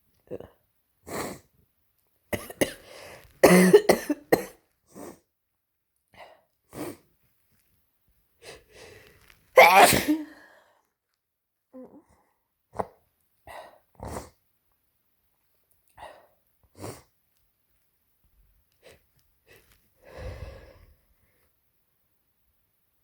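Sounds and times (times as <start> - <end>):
person sneezing: 9.6 - 10.4.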